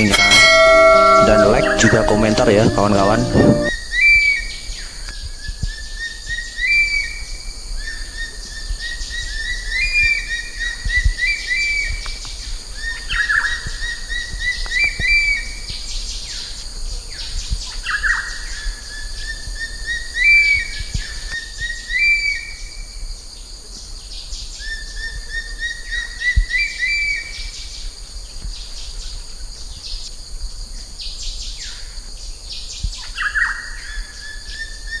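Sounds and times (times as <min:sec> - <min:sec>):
hawk-eagle shrill whistle: 0:00.0 - 0:03.7.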